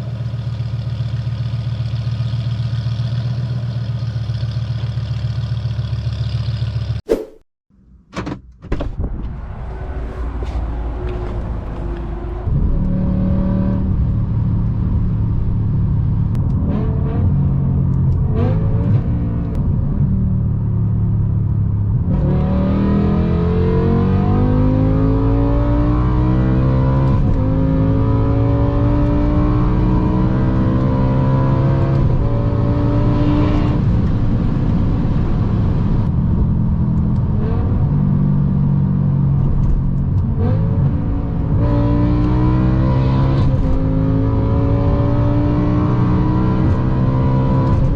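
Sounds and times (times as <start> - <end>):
engine revving at speed: 22.0 - 34.0, 40.2 - 47.9.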